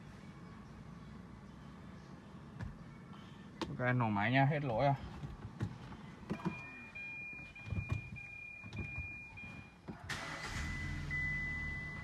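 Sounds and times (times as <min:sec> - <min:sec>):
car engine starting and idling: 0:09.4 - 0:12.0.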